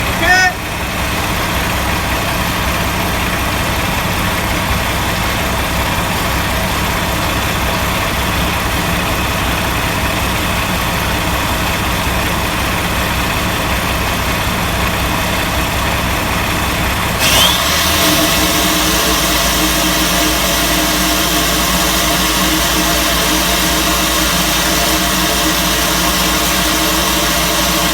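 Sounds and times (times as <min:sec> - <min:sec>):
diesel engine idling: 0:00.0 - 0:27.9
rising whine: 0:14.0 - 0:27.9.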